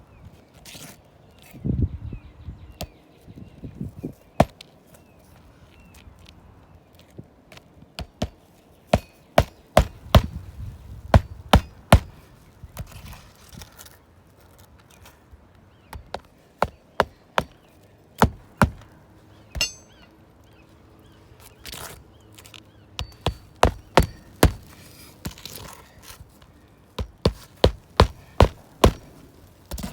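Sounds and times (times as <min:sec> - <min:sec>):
hammer blows on shingle roof: 0:08.0 - 0:10.5, 0:11.1 - 0:12.3, 0:16.0 - 0:19.0, 0:23.0 - 0:25.6, 0:27.0 - 0:29.9.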